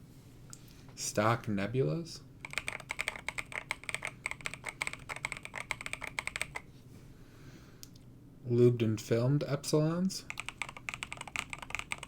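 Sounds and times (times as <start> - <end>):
mechanical keyboard typing: 2.4 - 6.6, 10.3 - 12.0.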